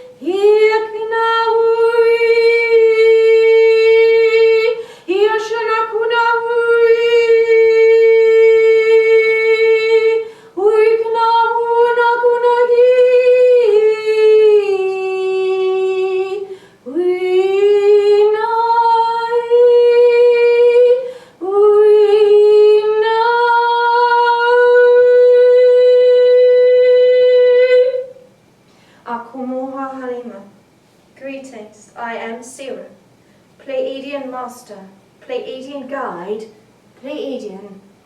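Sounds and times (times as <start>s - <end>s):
woman singing held vowel tones: 0.0s - 28.2s.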